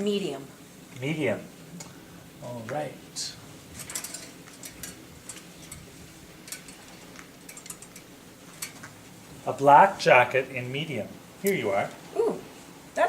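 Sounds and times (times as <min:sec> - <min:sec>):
faint room hum: 0:00.0 - 0:13.0
clothes rustling and clicking: 0:03.6 - 0:09.2.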